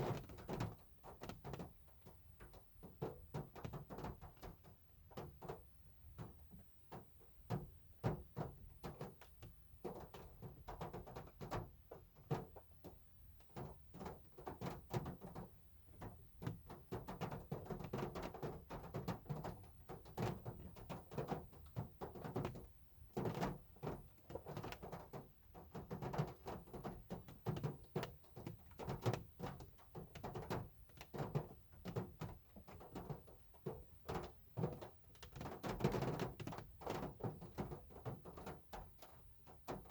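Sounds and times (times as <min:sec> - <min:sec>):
hard rain on a car: 0:13.6 - 0:38.5.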